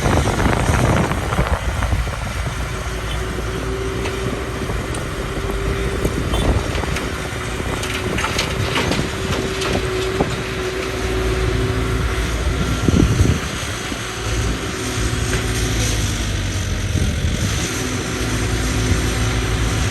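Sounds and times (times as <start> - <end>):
excavator engine rumbling: 0.0 - 19.9
steady whine: 0.0 - 19.9
knocks and clanks: 0.7 - 11.2.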